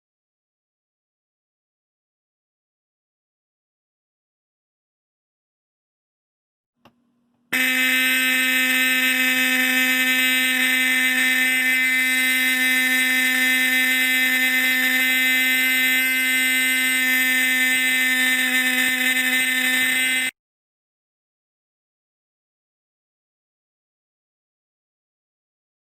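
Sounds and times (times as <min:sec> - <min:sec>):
fire alarm horn buzzing: 0:07.5 - 0:20.3.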